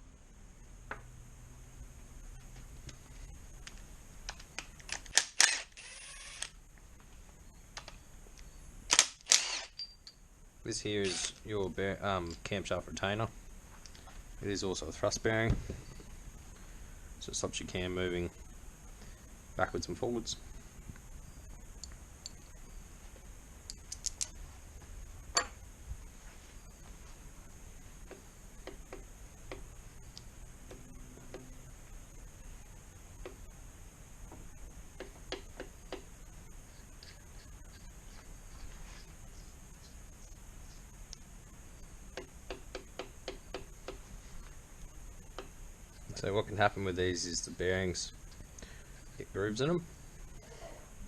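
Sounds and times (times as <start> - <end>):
tools and metal parts clicking: 9.3 - 10.2, 23.7 - 24.3
tools clicking and knocking: 23.7 - 24.3.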